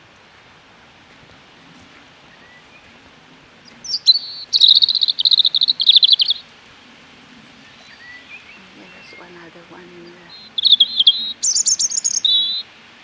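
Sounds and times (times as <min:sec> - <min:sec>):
small bird chirping: 0:03.6 - 0:06.5, 0:07.6 - 0:12.7.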